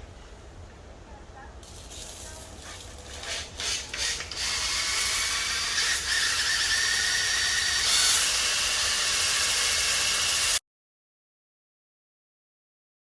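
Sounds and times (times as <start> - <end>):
hone stones scraping metal: 1.6 - 5.2
cordless drill spinning: 3.2 - 10.6.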